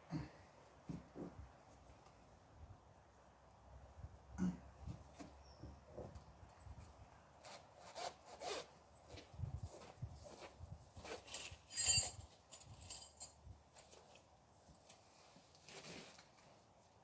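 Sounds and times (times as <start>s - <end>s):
nylon tent fabric rustling: 14.8s - 16.8s.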